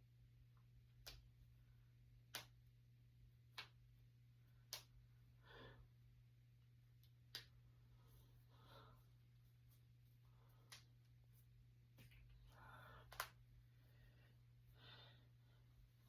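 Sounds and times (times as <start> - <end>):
faint low hum: 0.0 - 16.0
knuckles cracking: 2.3 - 2.6, 3.5 - 3.8, 4.6 - 5.0, 7.0 - 7.6, 10.6 - 11.0, 12.0 - 13.4.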